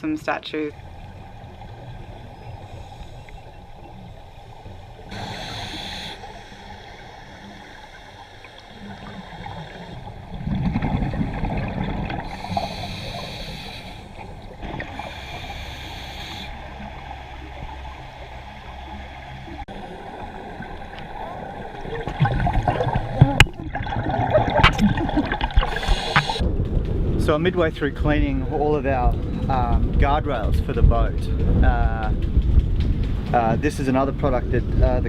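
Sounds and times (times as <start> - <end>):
hissing regulator inhalations: 1.0 - 10.4, 12.2 - 17.1, 25.6 - 26.4
gurgling bubbles exhaled: 5.0 - 17.8, 19.6 - 26.4.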